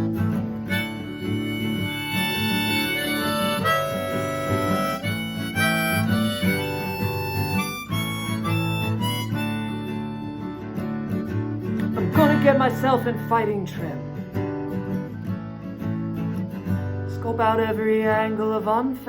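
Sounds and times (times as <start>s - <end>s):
harmonica melody: 0.0s - 13.3s
strummed acoustic guitar: 0.0s - 19.0s.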